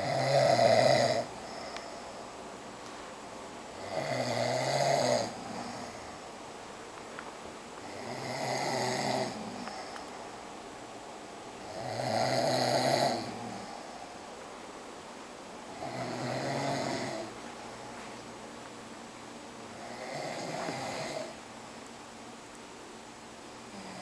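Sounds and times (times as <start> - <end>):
person snoring: 0.0 - 2.1, 3.8 - 6.2, 7.8 - 10.1, 11.6 - 14.0, 15.7 - 17.4, 19.7 - 21.4, 23.7 - 24.0.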